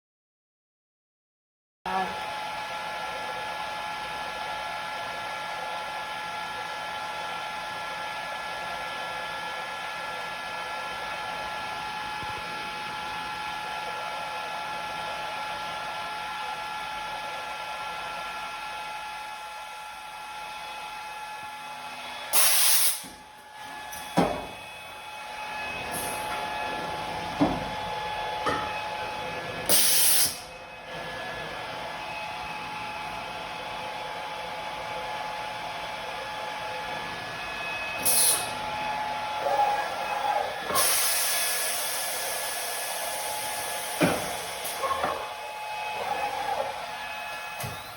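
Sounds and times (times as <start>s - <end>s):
machine motor whine: 6.1s - 47.9s
compressed air blasts hissing: 22.4s - 23.0s.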